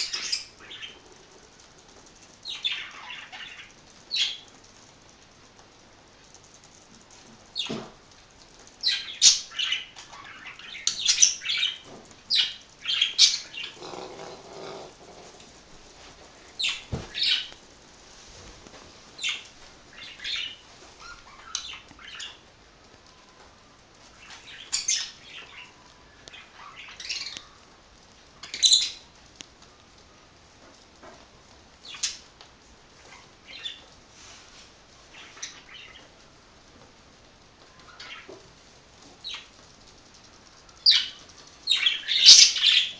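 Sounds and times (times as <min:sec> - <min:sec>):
budgerigars chirping and squawking: 0:41.7 - 0:42.9.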